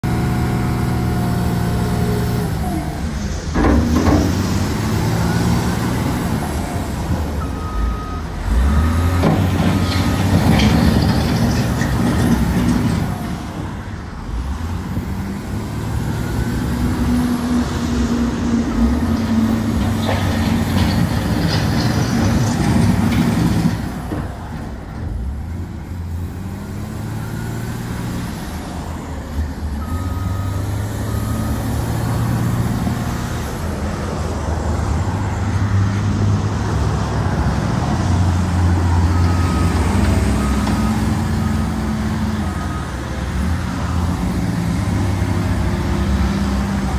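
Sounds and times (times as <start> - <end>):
diesel engine revving under load: 0.0 - 46.9.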